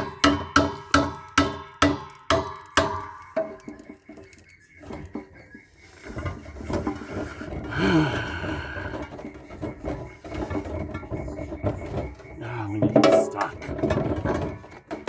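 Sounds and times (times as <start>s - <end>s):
metal parts knocking and scraping: 9.0s - 15.0s.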